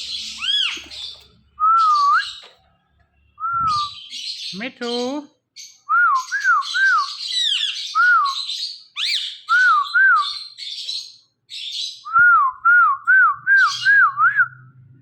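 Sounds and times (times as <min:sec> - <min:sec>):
parrot whistling calls: 0:00.0 - 0:02.4, 0:06.1 - 0:10.5, 0:13.4 - 0:14.3
parrot squawks and chirps: 0:00.0 - 0:02.5, 0:06.6 - 0:09.6.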